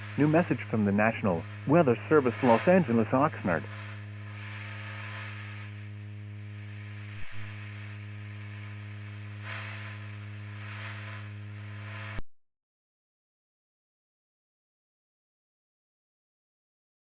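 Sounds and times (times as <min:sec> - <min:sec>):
electrical hum with hiss: 0:00.0 - 0:12.2.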